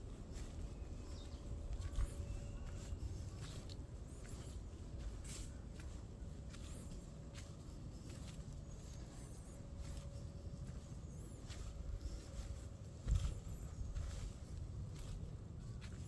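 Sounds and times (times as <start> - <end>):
barefoot footsteps on dirt: 0.0 - 16.0
faint high bird chirps: 0.4 - 3.7.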